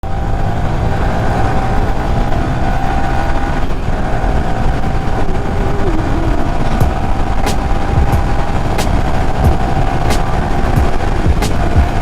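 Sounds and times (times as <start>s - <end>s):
motorcycle engine hum: 0.0s - 12.0s
wind rumble on microphone: 0.1s - 12.0s
tone dropping in pitch: 5.2s - 8.8s.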